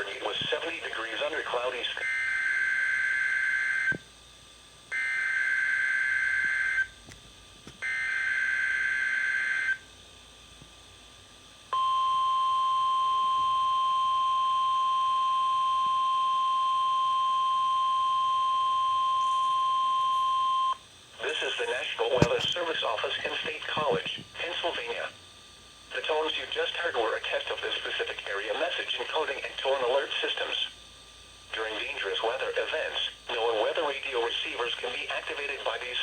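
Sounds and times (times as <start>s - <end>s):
steady warning alarm tone: 0.2s - 4.0s, 4.9s - 7.0s, 7.8s - 9.9s, 11.7s - 20.8s.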